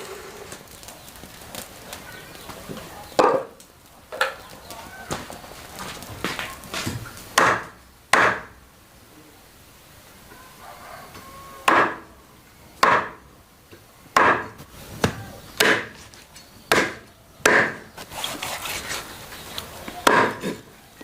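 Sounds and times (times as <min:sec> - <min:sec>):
blade chopping wood: 0:06.8 - 0:08.5, 0:11.7 - 0:12.0, 0:12.8 - 0:13.2, 0:14.2 - 0:16.0, 0:16.7 - 0:17.8, 0:20.0 - 0:20.6
scraping and rustling: 0:17.9 - 0:20.8.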